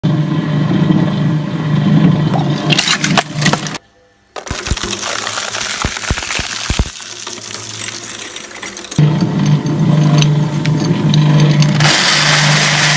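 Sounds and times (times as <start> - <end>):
steady machine hum: 0.0 - 12.9
balloons popping: 4.4 - 8.1
water jet spraying: 4.5 - 9.0.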